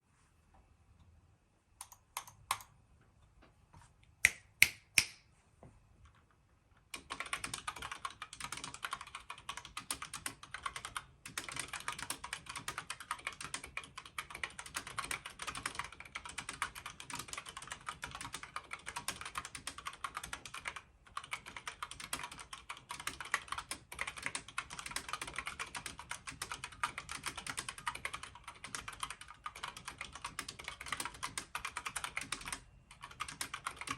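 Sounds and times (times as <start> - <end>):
mechanical keyboard typing: 1.8 - 2.7, 6.8 - 33.9.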